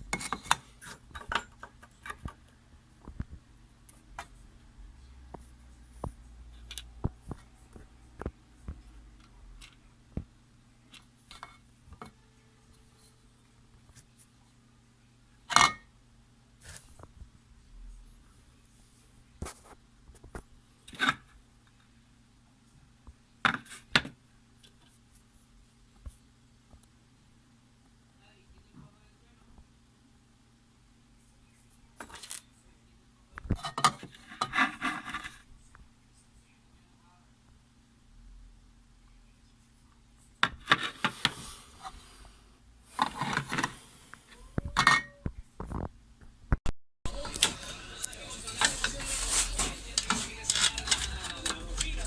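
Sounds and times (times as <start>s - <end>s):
faint steady hum: 0.0s - 52.0s
handling scrapes and clicks: 47.2s - 52.0s.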